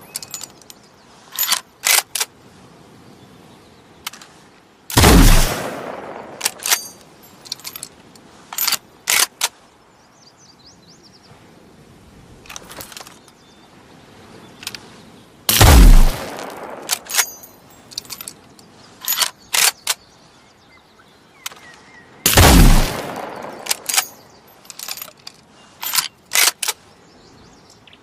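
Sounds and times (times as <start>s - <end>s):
rifle shot with rumble: 5.0s - 6.4s, 15.5s - 16.9s, 22.3s - 23.9s
rifle bolt clicks: 15.6s - 18.4s, 21.4s - 26.8s.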